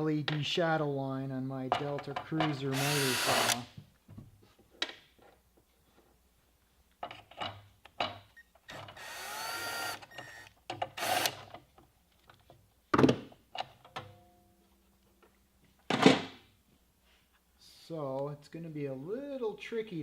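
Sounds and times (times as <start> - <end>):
miter saw whirr: 2.7 - 3.7, 8.7 - 10.4.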